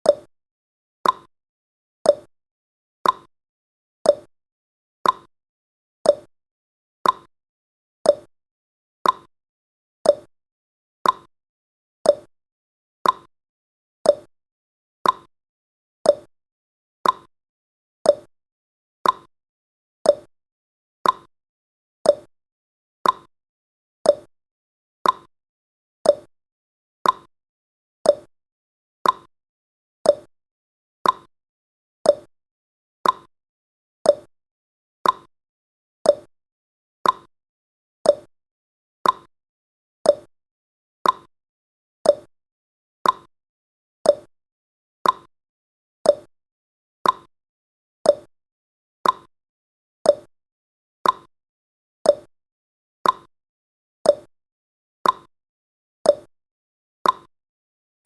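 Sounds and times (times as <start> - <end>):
clock ticking: 33.0 - 33.3, 37.0 - 37.3, 39.0 - 39.3, 43.0 - 43.3, 45.0 - 45.3, 49.0 - 49.3.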